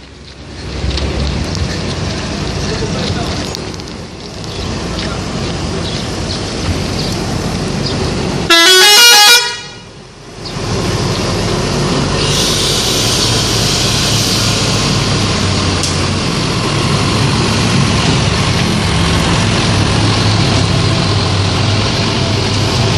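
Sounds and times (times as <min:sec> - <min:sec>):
engine and road rumble: 0:00.0 - 0:22.9
multi-tone musical air horn: 0:08.5 - 0:09.9
hiss: 0:12.1 - 0:15.4.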